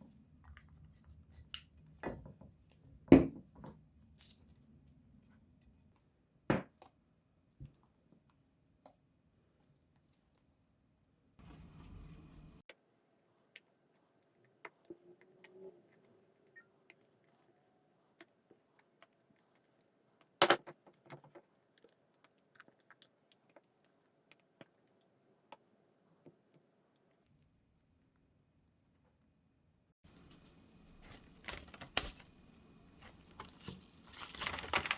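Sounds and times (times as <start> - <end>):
faint steady hum: 11.1 - 18.6.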